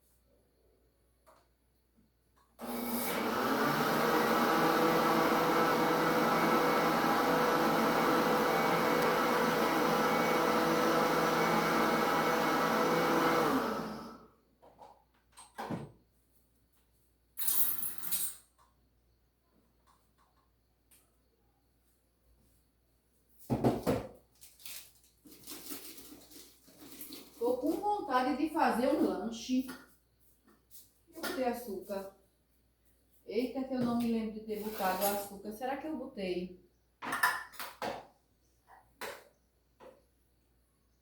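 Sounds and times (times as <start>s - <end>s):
blender running: 2.6s - 14.3s
knock: 23.5s - 24.1s
scraping or pouring noise: 24.4s - 27.9s.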